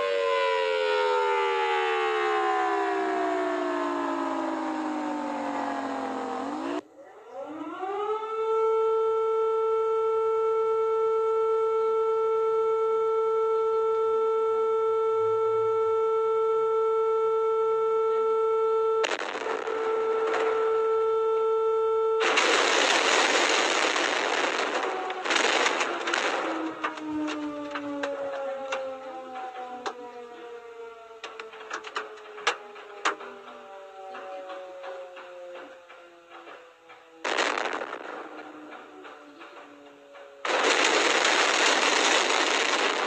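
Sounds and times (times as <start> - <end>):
alarm siren steady tone: 0.0 - 43.0
emergency siren winding down: 0.0 - 43.0
burst of noise: 22.2 - 27.8, 40.4 - 43.0.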